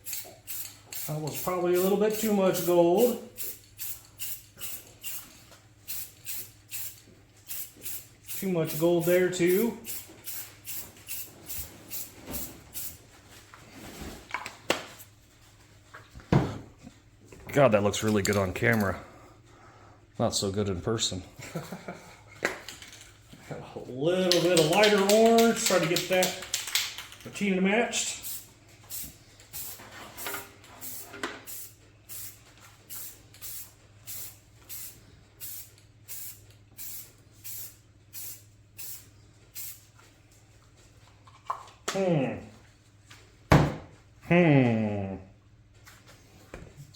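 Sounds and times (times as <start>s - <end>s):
spray can hissing: 0.0s - 13.0s, 28.2s - 29.8s, 30.8s - 39.8s.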